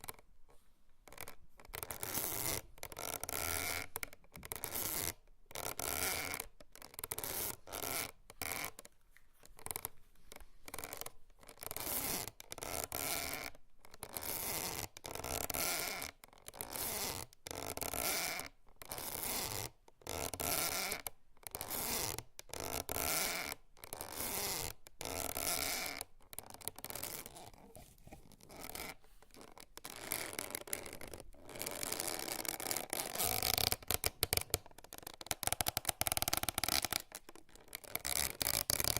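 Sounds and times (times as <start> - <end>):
rope creaking and rubbing: 1.0 - 38.9.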